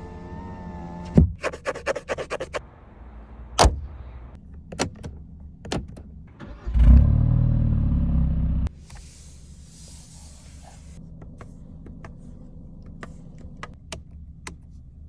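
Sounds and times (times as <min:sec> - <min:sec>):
car engine starting and running: 0:00.0 - 0:01.4, 0:02.7 - 0:09.2, 0:10.9 - 0:15.0.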